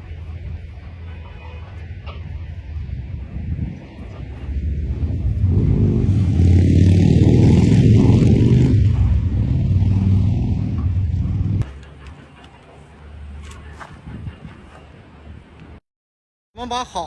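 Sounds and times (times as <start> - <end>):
loud engine running: 4.1 - 12.1.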